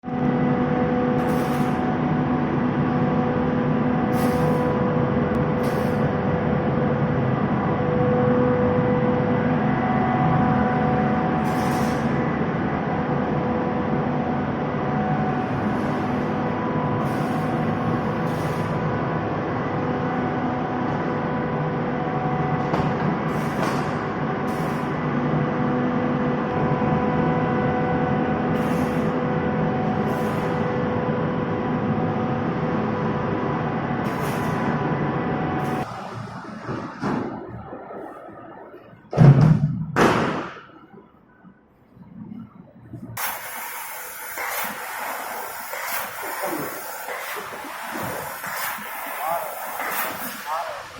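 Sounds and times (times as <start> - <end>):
air compressor hum and whine: 0.0 - 50.9
short hisses of air: 1.2 - 1.8, 4.1 - 4.7, 5.6 - 6.0, 11.4 - 12.2, 17.0 - 17.6, 18.2 - 18.8, 28.6 - 29.2, 43.2 - 50.9
air compressor humming: 43.2 - 50.9.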